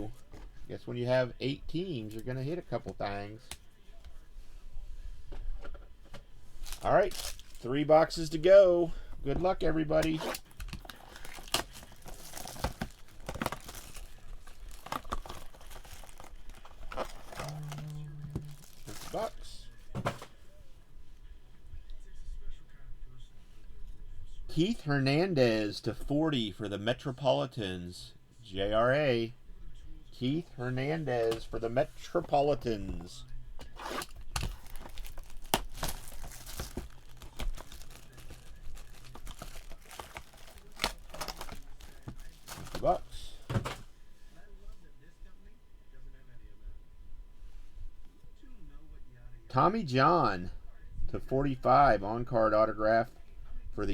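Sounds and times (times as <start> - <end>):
plastic packaging crinkling and tearing: 6.6 - 7.7, 10.0 - 19.4, 33.8 - 43.0.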